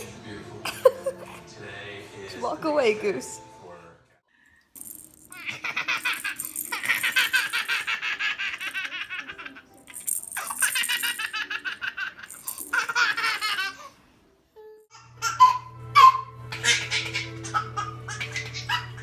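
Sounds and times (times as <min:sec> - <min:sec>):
baby laughing: 0:05.3 - 0:14.0, 0:14.6 - 0:19.0.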